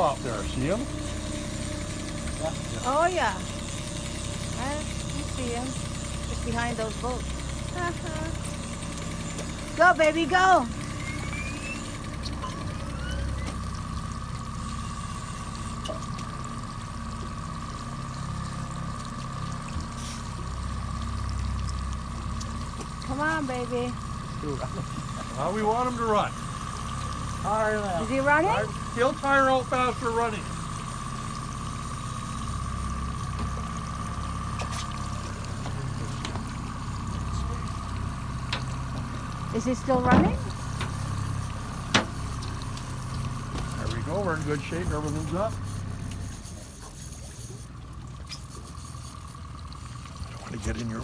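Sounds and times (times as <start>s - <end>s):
steady high whine: 0.0s - 15.9s
boat engine idling: 0.0s - 51.0s
water sloshing against hull: 0.0s - 51.0s.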